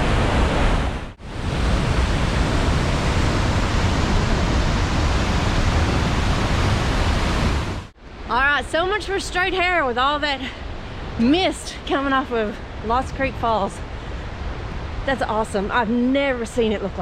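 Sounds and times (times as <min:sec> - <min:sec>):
waterfall rushing: 0:00.0 - 0:07.9.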